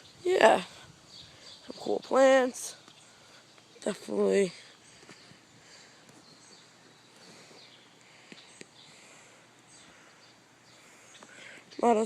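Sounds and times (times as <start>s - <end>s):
distant birds chirping: 0.0s - 12.0s.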